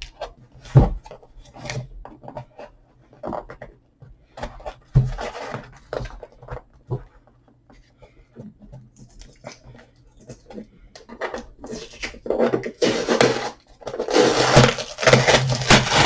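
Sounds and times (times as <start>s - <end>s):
cardboard box tearing and rustling: 12.7s - 16.0s.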